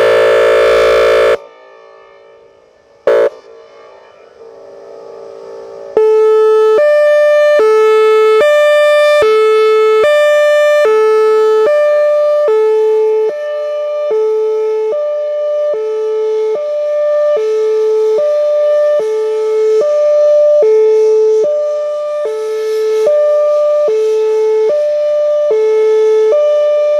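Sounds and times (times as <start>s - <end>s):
two-note warning siren wail: 0.0s - 1.4s, 3.1s - 3.3s.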